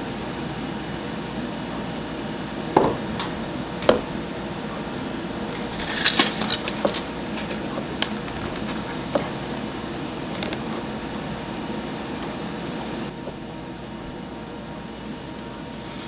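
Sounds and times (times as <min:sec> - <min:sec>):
small hard parts clicking: 0:02.8 - 0:11.0.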